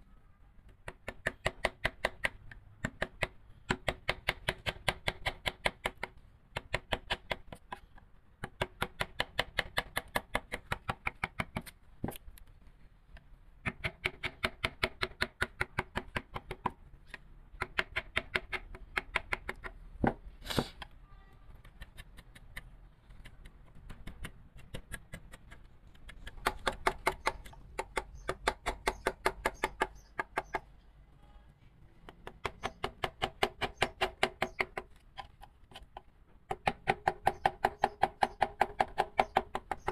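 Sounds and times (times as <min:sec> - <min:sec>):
mallet tapping chisel into wood: 0:36.0 - 0:39.9.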